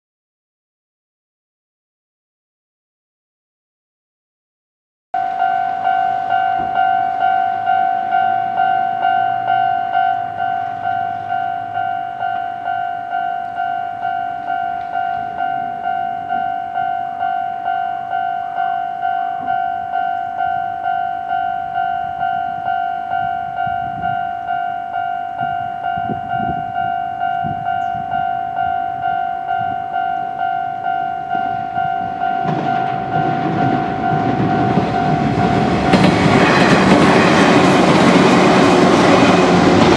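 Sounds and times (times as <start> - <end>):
level crossing alarm ringing: 5.2 - 36.7
train rumbling: 5.2 - 39.9.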